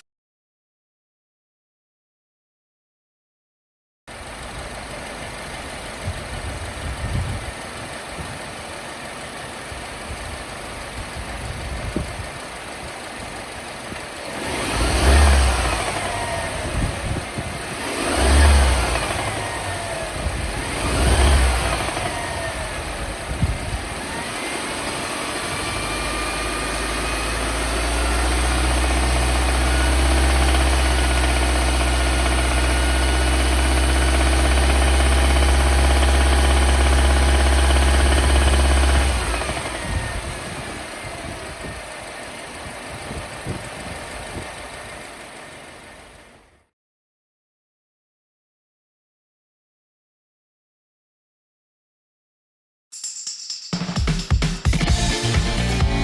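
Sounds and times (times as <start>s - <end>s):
car engine idling and revving: 4.1s - 46.6s
engine rattle: 4.1s - 46.6s.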